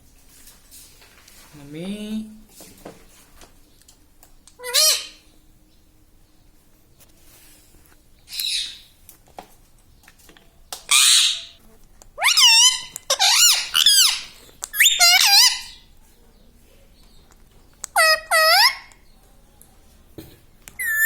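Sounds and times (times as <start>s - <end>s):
parrot squawking and whistling: 4.6s - 5.2s, 10.9s - 11.6s, 12.2s - 15.8s, 17.9s - 18.9s, 20.8s - 21.0s.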